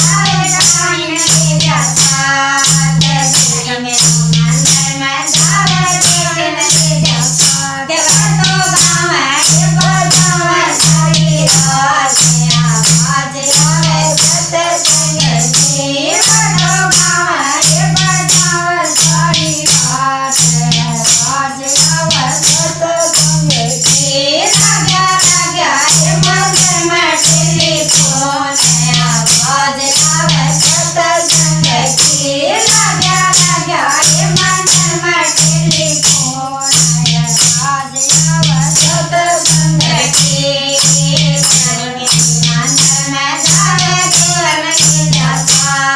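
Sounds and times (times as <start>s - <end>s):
person singing: 0.0s - 45.9s
rattling shaker percussion: 0.0s - 45.9s.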